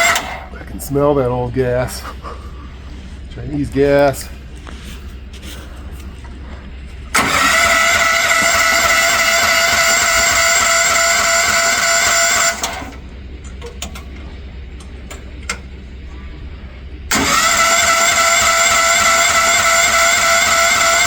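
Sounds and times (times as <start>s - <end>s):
electric starter cranking engine: 0.0s - 0.6s, 7.1s - 13.1s, 17.1s - 21.0s.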